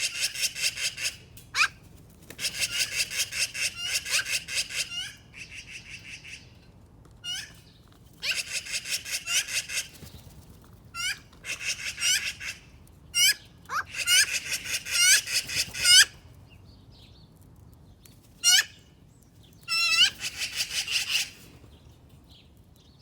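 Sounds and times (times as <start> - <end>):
magpie rattling calls: 0.0 - 6.4, 7.2 - 7.6, 8.2 - 16.2, 18.4 - 18.8, 19.7 - 21.5
bird squeaks: 7.2 - 7.6, 13.2 - 16.1, 18.4 - 18.7, 19.7 - 21.4.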